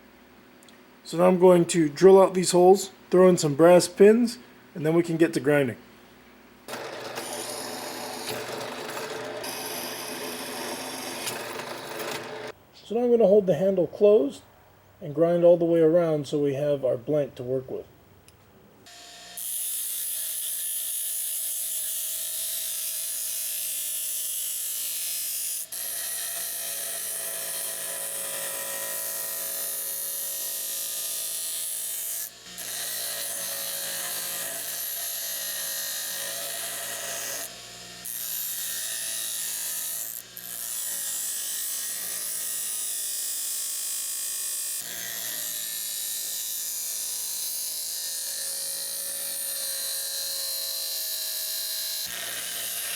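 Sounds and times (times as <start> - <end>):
power grinder grinding steel: 6.7 - 12.6, 24.2 - 52.9.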